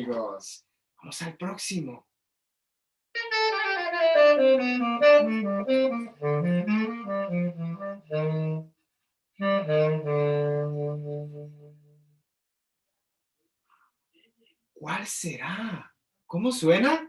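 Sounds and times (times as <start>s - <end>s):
saxophone melody: 3.2s - 8.8s, 9.4s - 12.2s.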